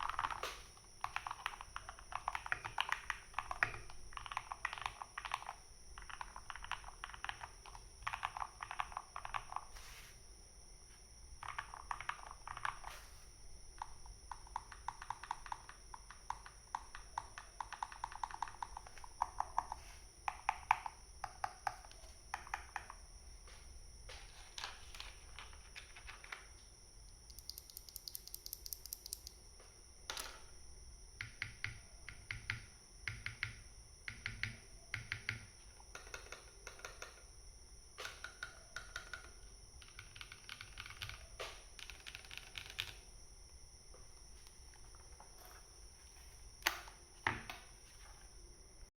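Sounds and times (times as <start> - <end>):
mechanical keyboard typing: 0.0 - 9.7, 11.4 - 12.9, 13.8 - 23.0, 24.6 - 26.5, 27.2 - 29.4, 31.2 - 37.3, 38.0 - 43.0.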